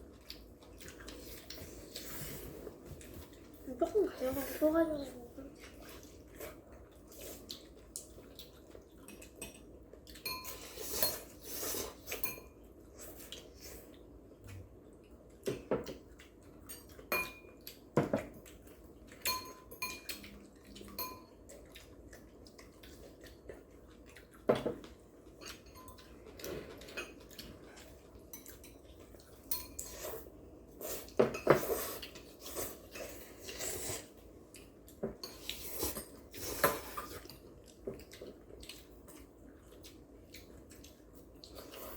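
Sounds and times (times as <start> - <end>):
utensils clinking on bowls: 9.1 - 12.6, 16.7 - 17.6, 19.2 - 20.3, 20.9 - 21.4, 25.4 - 27.4, 28.3 - 30.2.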